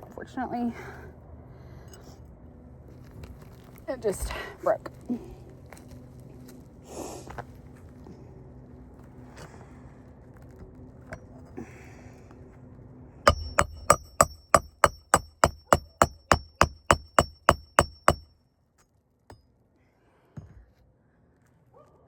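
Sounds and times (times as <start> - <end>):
hammer driving nail into shingle: 13.3 - 18.3.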